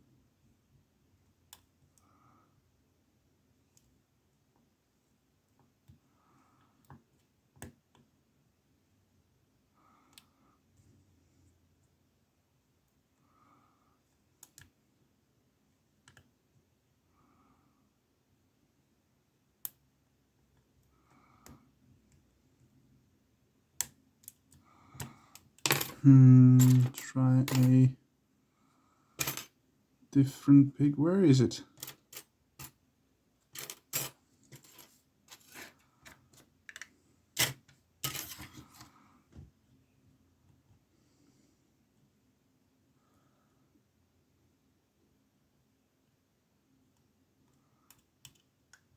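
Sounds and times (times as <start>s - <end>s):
lock picks clinking: 26.6s - 27.8s.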